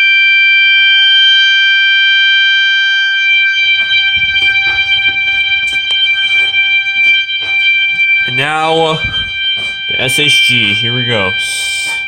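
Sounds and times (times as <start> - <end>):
fire alarm horn steady tone: 0.0 - 12.0
rustling and knocks: 3.2 - 10.9.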